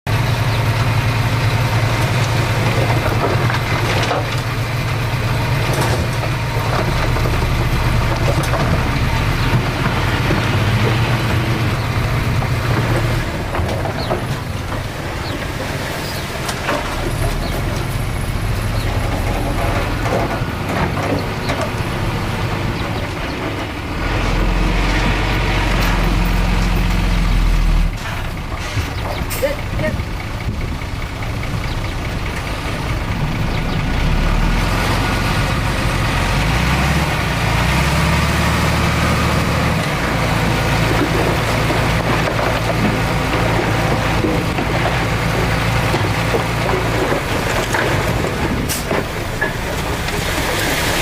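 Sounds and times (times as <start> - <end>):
heavy diesel engines running: 0.1 - 51.0
knocks and clanks: 1.9 - 4.6, 5.3 - 27.1, 27.9 - 32.7, 39.8 - 51.0.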